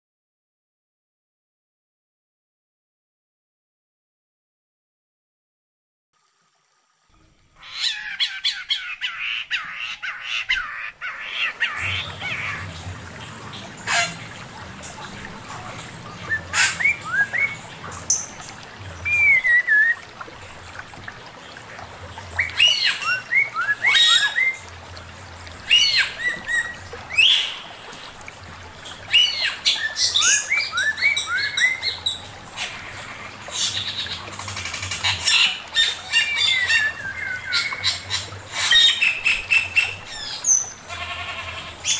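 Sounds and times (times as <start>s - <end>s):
low steady hum: 11.7s - 22.6s
bird singing and chattering: 19.0s - 20.0s.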